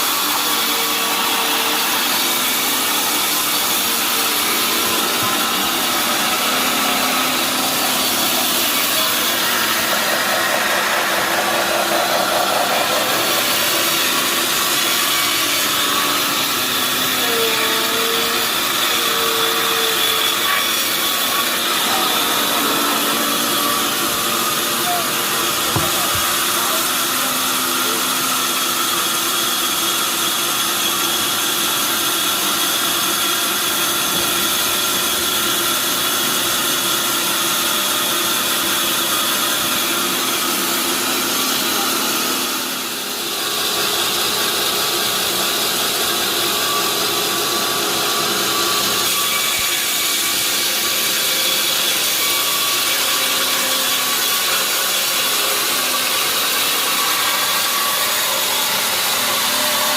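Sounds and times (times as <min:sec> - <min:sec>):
sawmill saw cutting log: 0:00.0 - 0:59.9.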